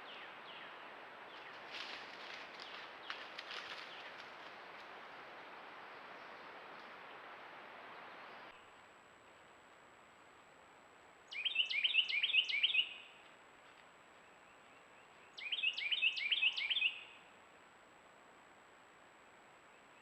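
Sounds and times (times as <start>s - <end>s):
faint steady hiss: 0.0s - 20.0s
songbird whistling: 11.3s - 13.1s, 15.4s - 17.1s.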